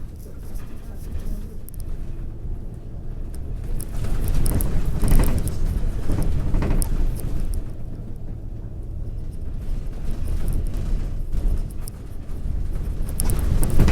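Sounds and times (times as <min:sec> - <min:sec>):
vehicle rumbling: 0:00.0 - 0:13.9
small clicks: 0:13.0 - 0:13.9.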